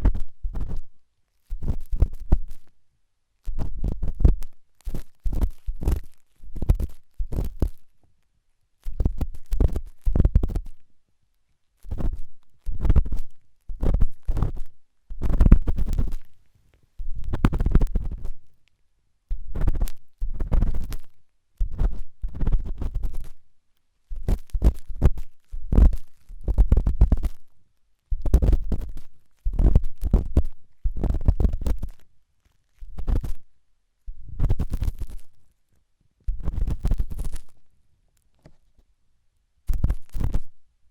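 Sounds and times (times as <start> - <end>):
ear tool scratching in ear: 21.7 - 23.4, 34.4 - 35.3, 36.4 - 37.5.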